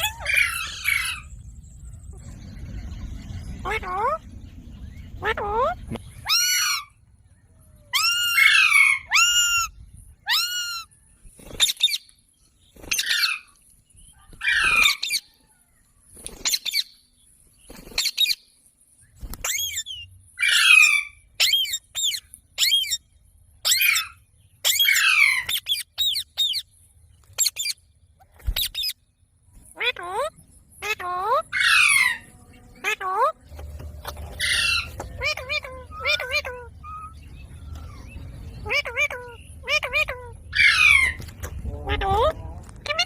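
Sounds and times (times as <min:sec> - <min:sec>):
parakeet calling: 0:00.0 - 0:01.4, 0:05.0 - 0:07.0, 0:07.9 - 0:10.9, 0:19.4 - 0:23.0, 0:23.6 - 0:26.7, 0:27.4 - 0:27.8, 0:29.8 - 0:43.0.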